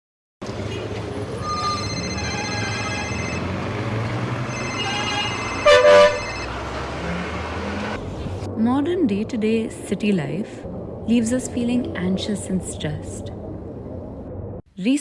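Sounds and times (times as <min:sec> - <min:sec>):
rumble of traffic engines: 0:00.4 - 0:14.6
car horns honking: 0:00.7 - 0:08.0.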